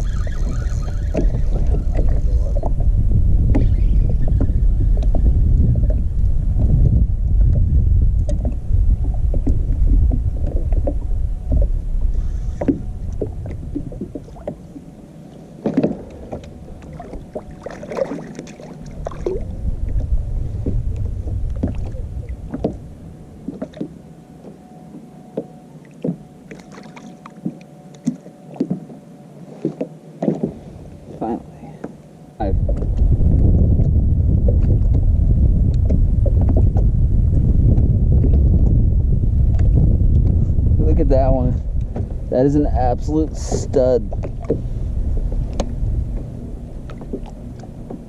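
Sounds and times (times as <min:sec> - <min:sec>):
wind rumbling on microphone: 0:00.0 - 0:24.1, 0:32.4 - 0:48.0
gear knocking on boat: 0:31.2 - 0:48.0.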